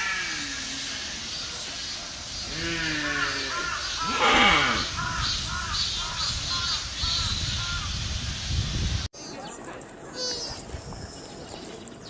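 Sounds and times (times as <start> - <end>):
deer calling: 2.5 - 7.4.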